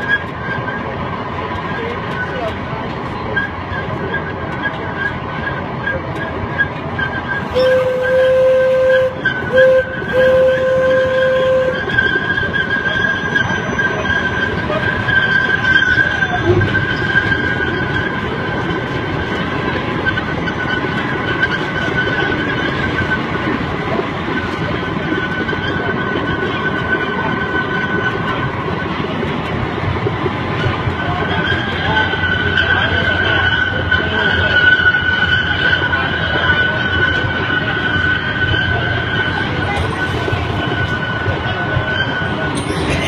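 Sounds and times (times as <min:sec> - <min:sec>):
ride train running on track: 0:00.0 - 0:43.0
train horn blasts: 0:07.4 - 0:12.3.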